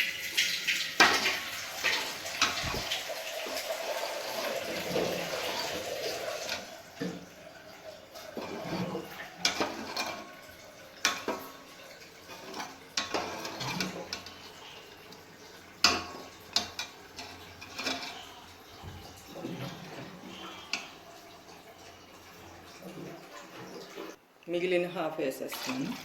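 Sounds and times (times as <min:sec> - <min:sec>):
water pouring into a pot: 0:00.0 - 0:24.2, 0:25.4 - 0:26.0
metal bowl clinking against pot: 0:08.2 - 0:14.8, 0:15.4 - 0:21.0.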